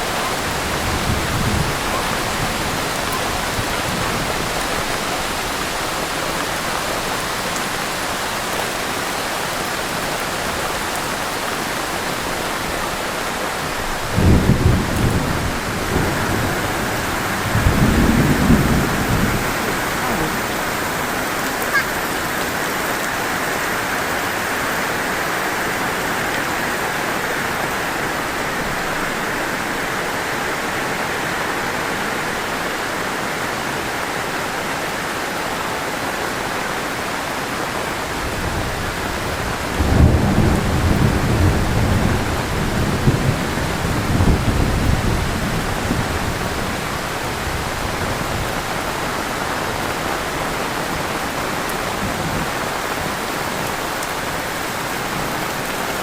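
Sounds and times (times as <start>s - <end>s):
low rumble of thunder: 0.0s - 7.4s, 13.8s - 21.4s, 38.1s - 49.1s
heavy rain pouring: 0.0s - 56.0s.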